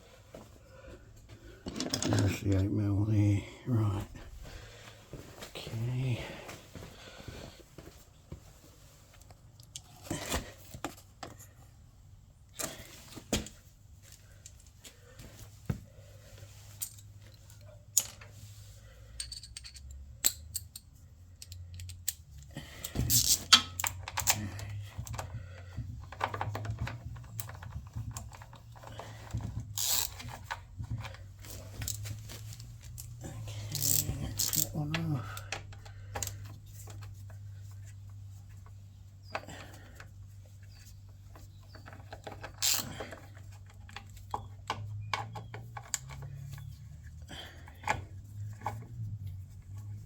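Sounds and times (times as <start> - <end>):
metal hand tools clinking: 19.2 - 20.8, 33.7 - 35.1.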